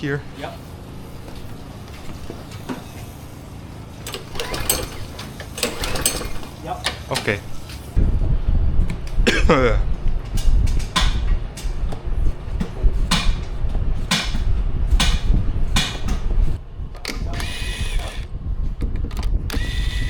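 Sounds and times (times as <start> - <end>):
recoil starter rope pulls: 3.9 - 7.8, 16.9 - 20.0
steady high-pitched whirring: 16.6 - 20.0.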